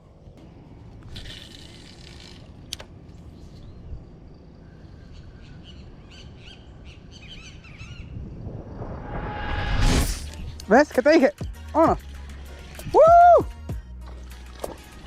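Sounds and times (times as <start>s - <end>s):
birds chirping: 3.2s - 8.4s.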